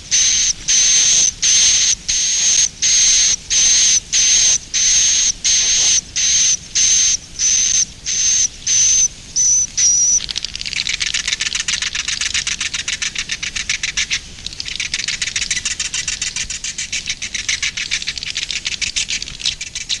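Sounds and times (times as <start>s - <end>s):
swiftlet buzzy chirps: 0.1s - 11.3s
rapid clicking twitter: 0.1s - 20.0s.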